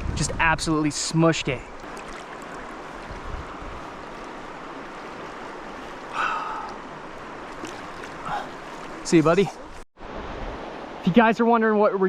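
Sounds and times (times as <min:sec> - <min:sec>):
flowing stream rushing: 0:01.7 - 0:11.1.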